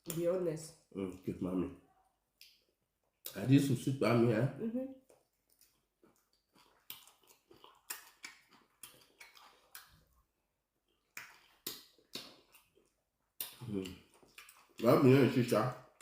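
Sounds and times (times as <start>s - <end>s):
short eating clicks and smacks: 5.0s - 10.1s, 11.1s - 14.8s
person eating soup: 5.0s - 15.2s.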